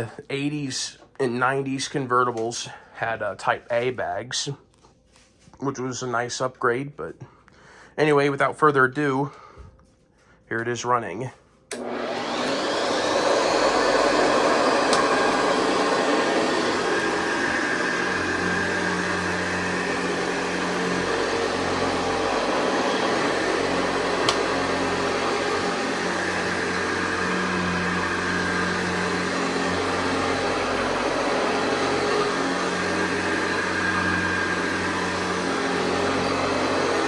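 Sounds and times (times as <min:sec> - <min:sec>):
upright vacuum cleaner running: 0:11.7 - 0:37.0.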